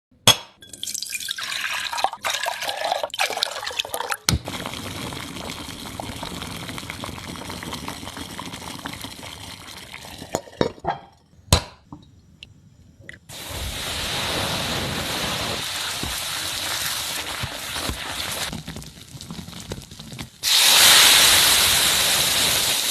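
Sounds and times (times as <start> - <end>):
liquid hissing in pan: 13.3 - 22.9.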